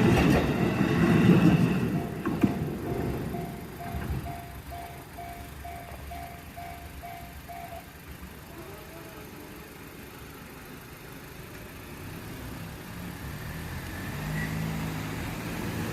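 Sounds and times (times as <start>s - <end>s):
level crossing warning bell dinging: 0.0s - 8.0s
road traffic: 0.0s - 15.9s
vehicle engine: 0.0s - 15.9s.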